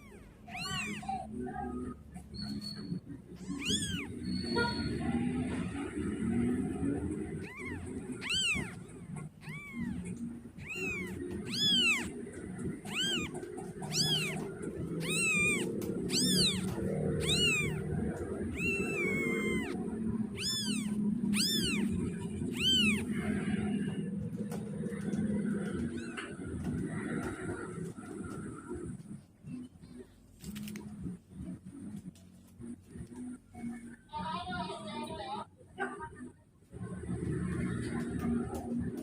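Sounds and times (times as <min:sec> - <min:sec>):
kitten mewing: 0:00.0 - 0:02.6, 0:03.2 - 0:27.4.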